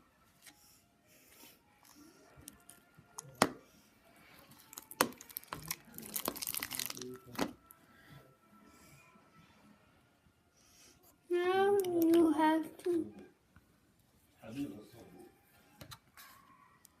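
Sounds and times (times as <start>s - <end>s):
slime crackling and squelching: 4.5s - 7.5s.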